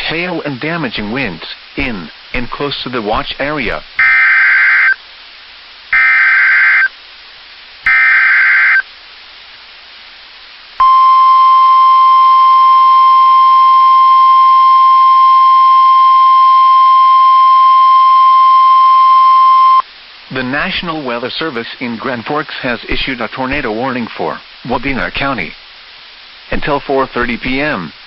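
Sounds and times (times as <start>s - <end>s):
steady single-pitch alarm tone: 4.0s - 5.0s, 6.0s - 6.9s, 7.9s - 8.8s, 10.8s - 19.8s.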